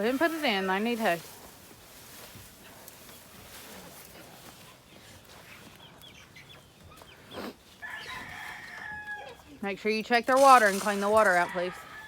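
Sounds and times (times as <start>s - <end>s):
chickens clucking and peeping: 0.2s - 9.6s
rooster crowing: 7.8s - 9.4s, 11.3s - 12.0s.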